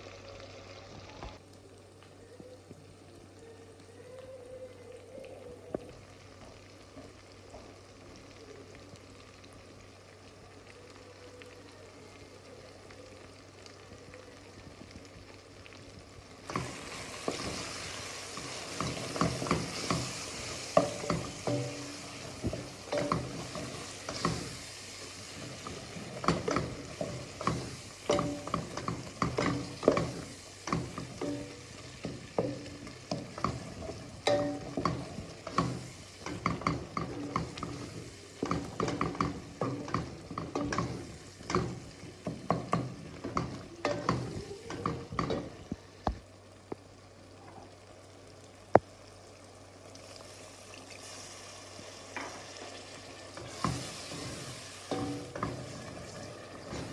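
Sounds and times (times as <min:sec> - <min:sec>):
utensil clinking in a pot: 0:18.4 - 0:24.5, 0:25.4 - 0:45.6, 0:53.4 - 0:56.0.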